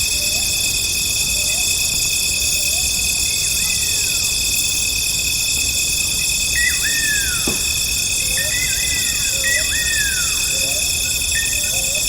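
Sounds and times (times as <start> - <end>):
chorus of crickets and insects: 0.0 - 12.0
animal calls whistling down: 6.6 - 10.6.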